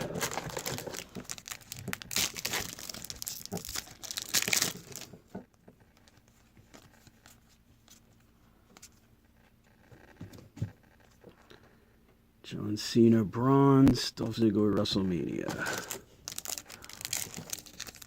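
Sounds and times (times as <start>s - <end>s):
wrapper crinkling and tearing: 0.0s - 5.2s, 15.5s - 18.0s.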